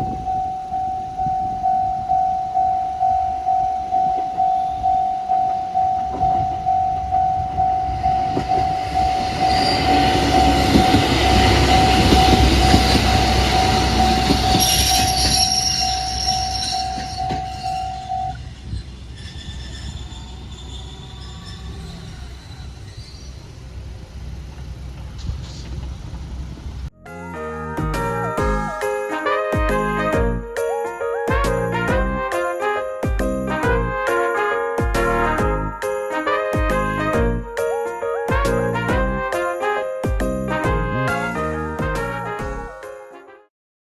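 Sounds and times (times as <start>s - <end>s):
level-crossing warning bell: 0.0s - 18.7s, 27.0s - 42.3s
train wheel rumble and squeal: 3.7s - 25.9s.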